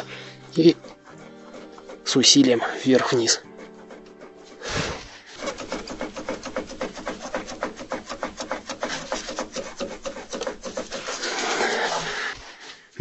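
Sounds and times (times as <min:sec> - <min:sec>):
rapid clicks: 0:05.2 - 0:12.0.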